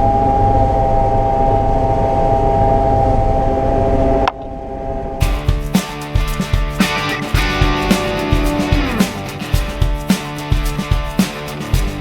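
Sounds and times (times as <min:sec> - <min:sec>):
guitar music: 0:05.2 - 0:12.0.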